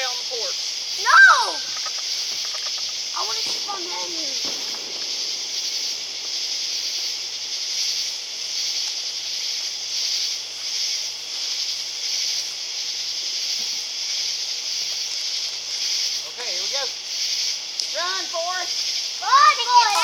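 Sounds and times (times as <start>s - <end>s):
night insects shrilling: 0.0s - 20.0s.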